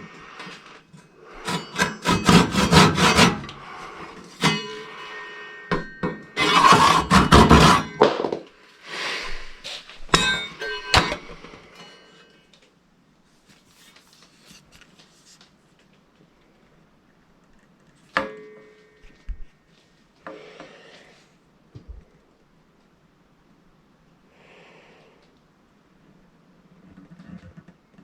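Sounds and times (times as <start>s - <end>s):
scraping on wood: 0.0s - 8.4s.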